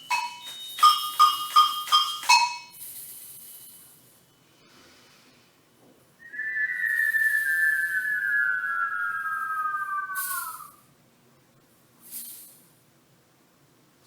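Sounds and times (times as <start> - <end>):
high hiss: 6.2 - 10.8
long whistled note gliding down: 6.2 - 10.8.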